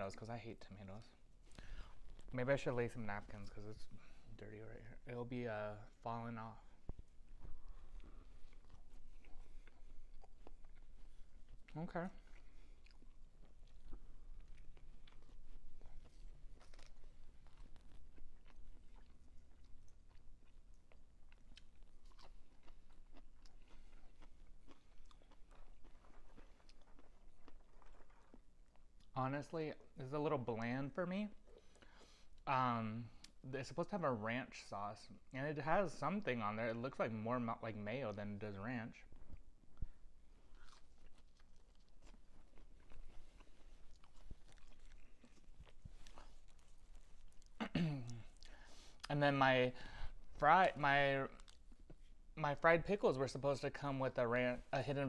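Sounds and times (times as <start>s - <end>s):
person chewing crunchy food: 5.7s - 29.2s, 38.9s - 49.1s, 49.8s - 52.4s.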